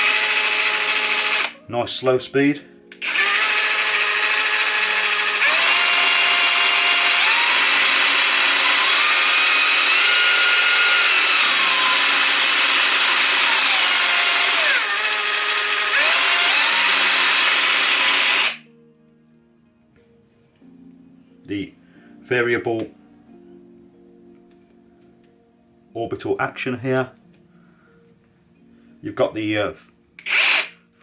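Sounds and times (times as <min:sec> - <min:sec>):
jigsaw whining: 0:00.0 - 0:01.6, 0:02.9 - 0:18.6, 0:30.2 - 0:30.8.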